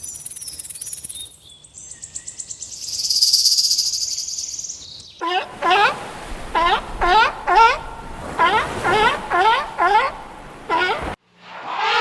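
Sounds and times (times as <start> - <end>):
lower insect trill: 0.0 - 1.5, 2.6 - 4.8
short insect chirps: 0.0 - 1.6, 2.2 - 5.0
insects trilling: 2.7 - 4.8.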